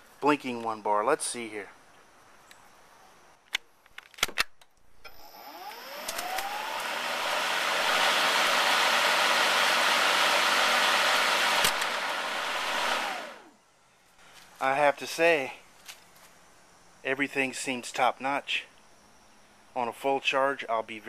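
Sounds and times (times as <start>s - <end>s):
electric mower motor whirring: 5.1s - 13.5s.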